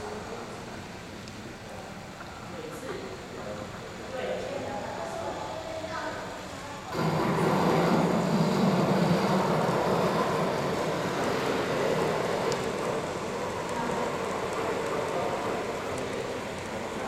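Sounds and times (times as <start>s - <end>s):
model train wheels rattling: 7.0s - 17.0s.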